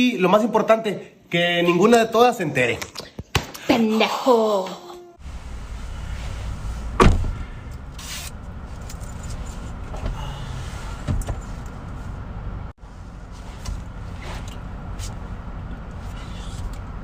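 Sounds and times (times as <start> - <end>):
steady low rumble: 5.2 - 17.0
loud thump: 6.9 - 7.5.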